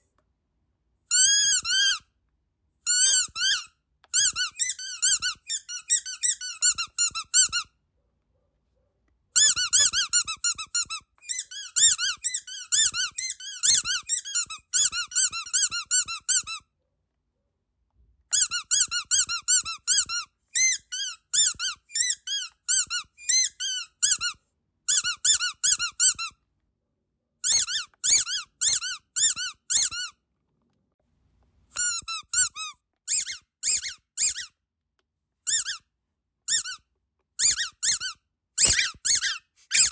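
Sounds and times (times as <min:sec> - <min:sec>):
squeaky dog toy squeaks: 0:01.1 - 0:02.1, 0:02.8 - 0:07.8, 0:09.4 - 0:16.7, 0:18.3 - 0:26.4, 0:27.4 - 0:30.2, 0:31.7 - 0:34.6, 0:35.4 - 0:39.9.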